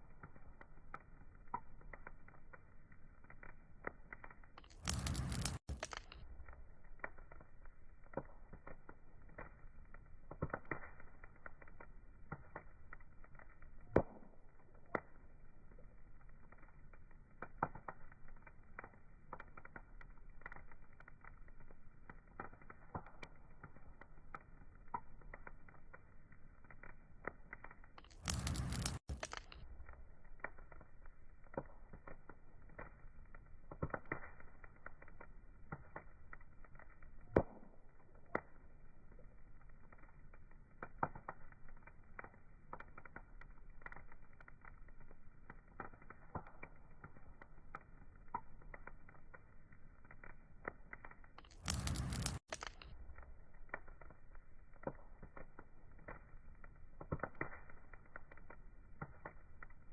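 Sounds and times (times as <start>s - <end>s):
wood fire crackling: 0.0s - 59.9s
fire hissing: 4.7s - 6.2s, 28.1s - 29.6s, 51.5s - 52.9s.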